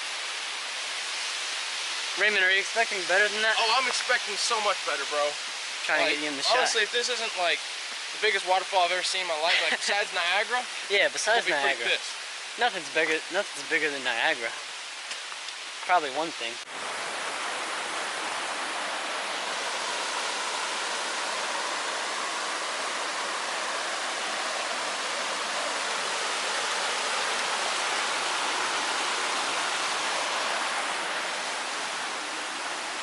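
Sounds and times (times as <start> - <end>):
waterfall rushing: 0.0 - 33.0.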